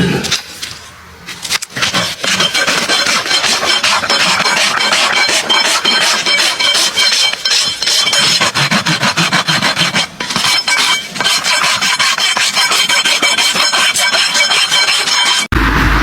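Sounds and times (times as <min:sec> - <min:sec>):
rasp scraping hoof: 0:00.0 - 0:15.5.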